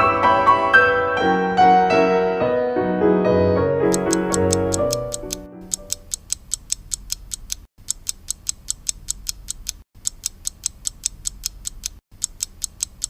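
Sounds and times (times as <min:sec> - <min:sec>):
rapid mechanical ticking: 0:03.9 - 0:13.0.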